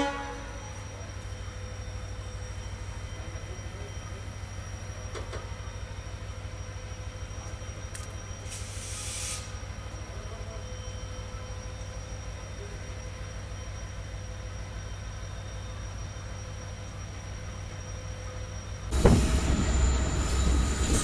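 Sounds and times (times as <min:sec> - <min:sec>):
short hiss: 0:08.5 - 0:09.6
train rumble: 0:16.6 - 0:21.0.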